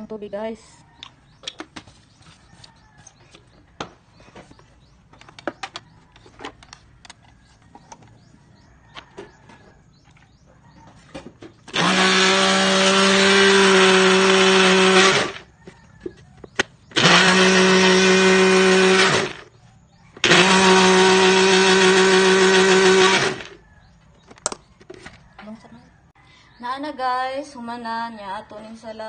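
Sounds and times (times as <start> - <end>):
electric blender running: 11.7 - 15.5, 17.0 - 19.5, 20.2 - 23.6.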